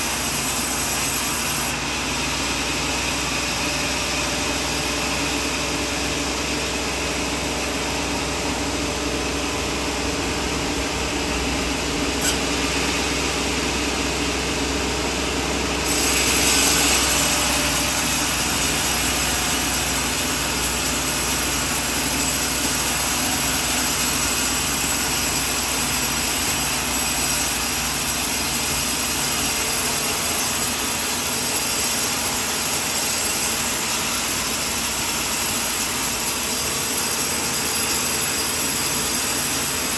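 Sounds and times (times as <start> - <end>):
sawmill sawing wood: 0.0 - 1.8, 15.8 - 39.9
short click: 12.2 - 12.6.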